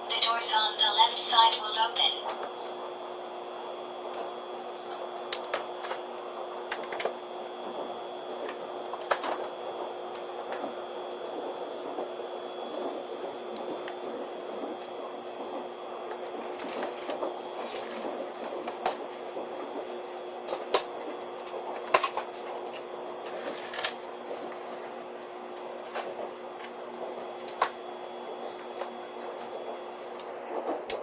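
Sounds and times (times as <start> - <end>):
train car hum with held tone: 0.0 - 31.0.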